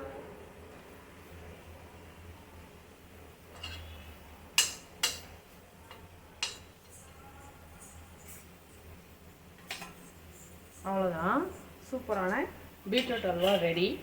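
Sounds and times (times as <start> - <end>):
faint steady hum: 0.0 - 14.0
metal spoon clinking on cookware: 3.5 - 4.0, 4.6 - 5.3, 5.9 - 7.2, 12.9 - 13.7.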